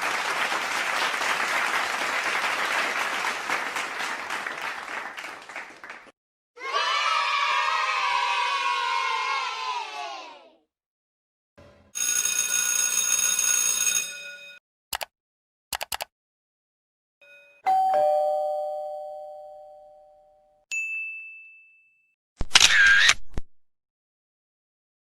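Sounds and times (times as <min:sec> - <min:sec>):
sharp clicks: 0:14.9 - 0:15.1, 0:15.7 - 0:16.1
two-note chime: 0:17.6 - 0:21.9.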